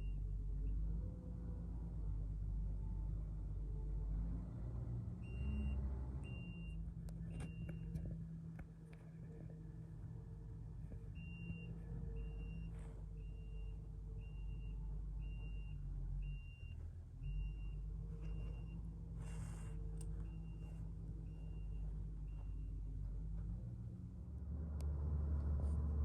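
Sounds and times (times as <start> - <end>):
diesel engine running: 0.0 - 26.0
backup alarm beeping: 11.2 - 22.8.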